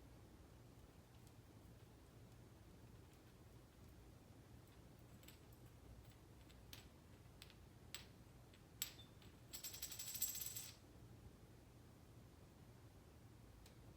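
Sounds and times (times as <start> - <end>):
coin clattering on hard surface: 5.1 - 10.8.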